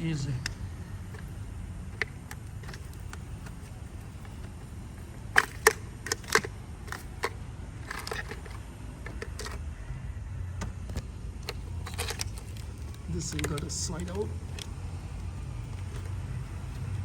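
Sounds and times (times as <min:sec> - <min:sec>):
plastic connector latches clicking: 0:05.4 - 0:09.6, 0:10.6 - 0:14.8.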